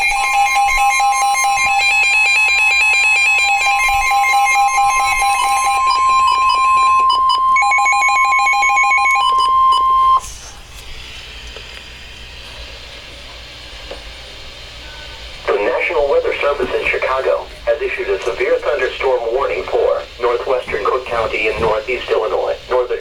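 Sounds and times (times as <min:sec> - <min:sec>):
fast beeping: 0:00.0 - 0:10.2
two-tone alert alarm: 0:00.0 - 0:10.2
faint radio hiss: 0:14.8 - 0:23.0.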